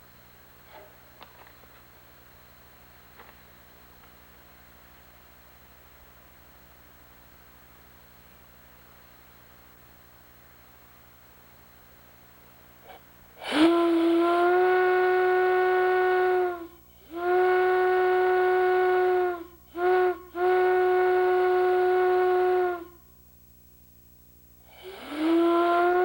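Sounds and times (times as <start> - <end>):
steam whistle blasts with hiss: 12.8 - 23.2, 24.6 - 26.0.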